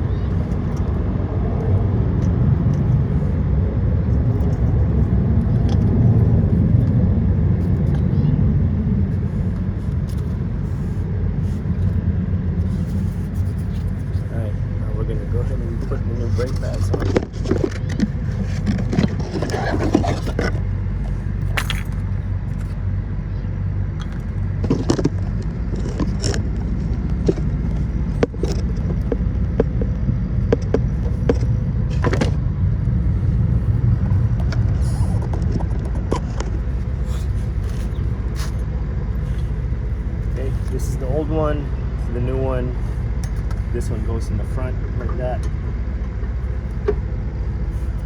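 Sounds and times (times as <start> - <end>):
steady low hum: 0.0 - 48.0
metallic clicks and scrapes: 16.3 - 22.8, 24.0 - 32.4.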